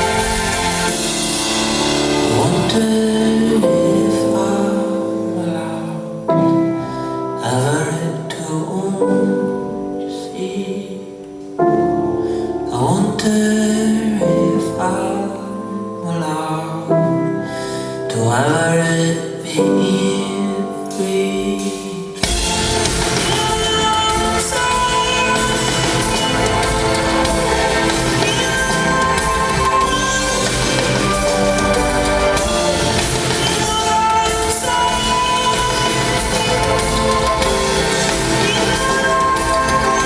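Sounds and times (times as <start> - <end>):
full band playing: 0.0 - 9.4, 18.5 - 40.0
piano chords: 0.0 - 40.0.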